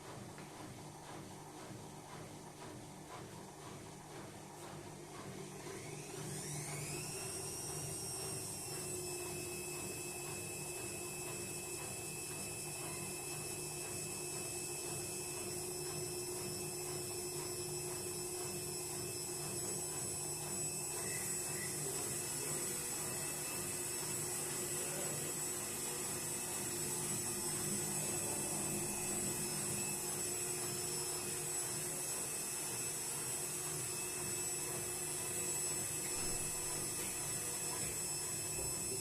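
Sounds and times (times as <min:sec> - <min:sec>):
washing machine humming: 0:00.0 - 0:39.0.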